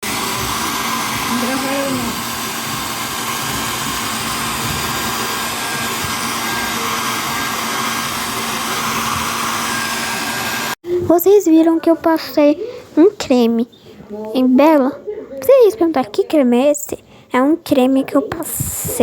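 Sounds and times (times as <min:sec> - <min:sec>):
hair dryer running: 0:00.0 - 0:10.8.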